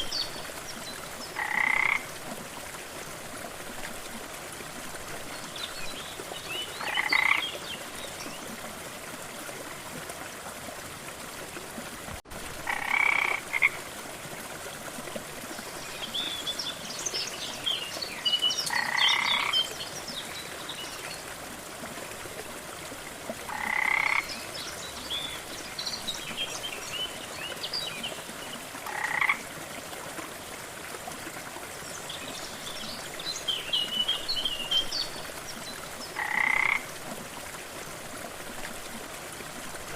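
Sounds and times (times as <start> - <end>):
frog croaking: 1.4 - 2.1, 6.8 - 7.4, 12.6 - 13.8, 18.7 - 19.6, 23.5 - 24.3, 28.9 - 29.4, 36.2 - 36.8.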